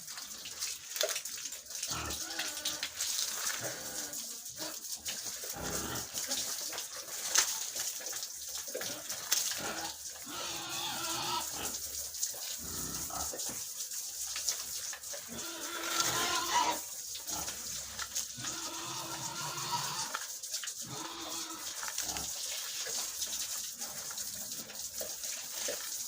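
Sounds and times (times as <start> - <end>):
pigs grunting: 1.8 - 6.9, 8.7 - 13.6, 15.2 - 22.5
pigs drawn-out calls: 1.8 - 7.6, 8.6 - 13.6, 15.1 - 23.1.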